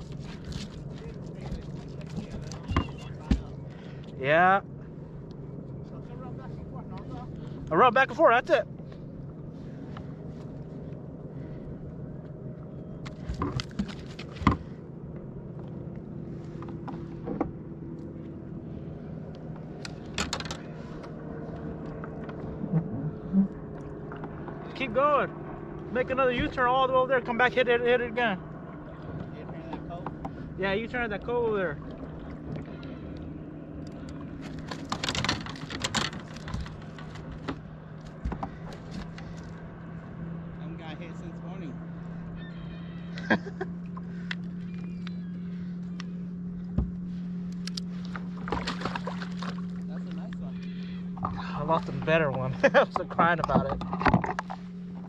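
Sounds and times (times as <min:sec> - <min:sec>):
boat motor humming: 0:00.0 - 0:55.0
sharp knocks and clicks: 0:53.0 - 0:54.6.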